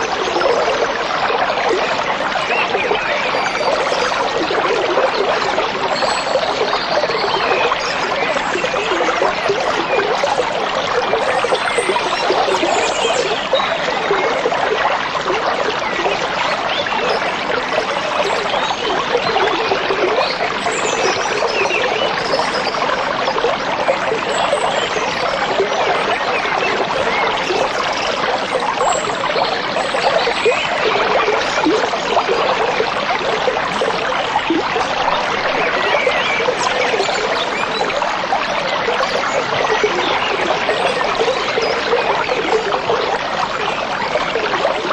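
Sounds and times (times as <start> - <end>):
stream babbling over stones: 0.0 - 44.9.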